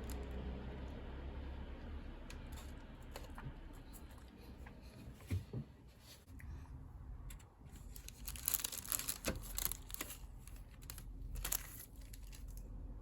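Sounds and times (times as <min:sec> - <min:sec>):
wrapping crinkling and tearing: 0:07.7 - 0:12.7.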